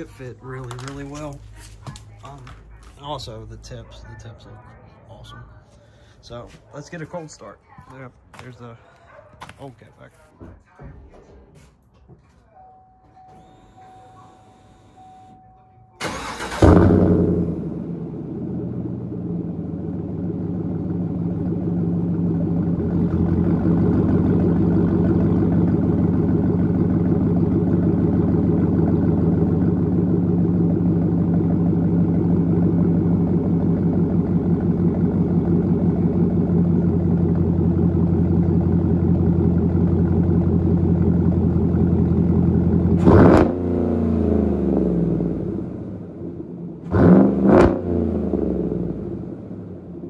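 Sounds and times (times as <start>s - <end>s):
car engine idling and revving: 16.0s - 50.0s.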